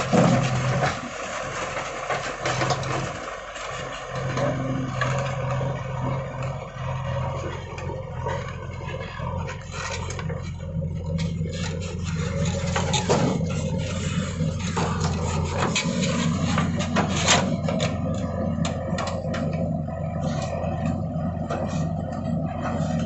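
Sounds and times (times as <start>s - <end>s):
heavy diesel engine running: 0.0s - 23.0s
bucket scraping and knocking soil: 7.4s - 19.5s.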